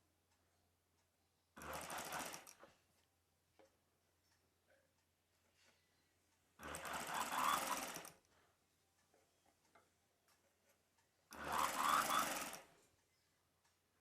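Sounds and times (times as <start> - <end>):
sewing machine stitching: 1.6 - 2.8, 6.6 - 8.2, 11.3 - 12.8.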